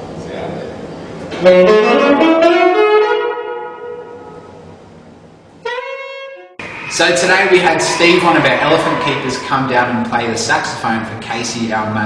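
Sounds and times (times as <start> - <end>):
saxophone playing: 1.4 - 4.6, 5.6 - 10.1.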